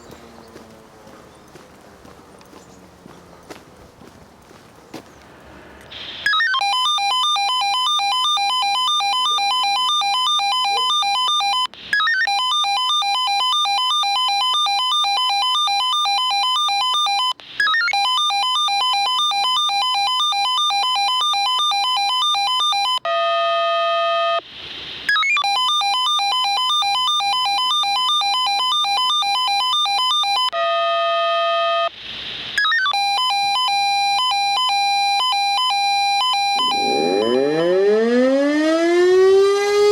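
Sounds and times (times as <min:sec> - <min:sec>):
low steady pager tone: 0:06.3 - 0:24.4, 0:25.1 - 0:31.9, 0:32.6 - 0:37.9
pager two-note electronic beeping: 0:32.6 - 0:37.9.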